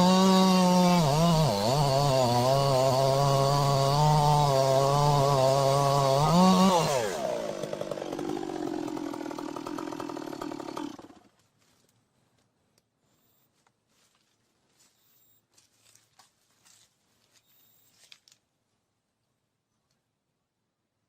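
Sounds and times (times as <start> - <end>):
chainsaw running under load: 0.0 - 11.4.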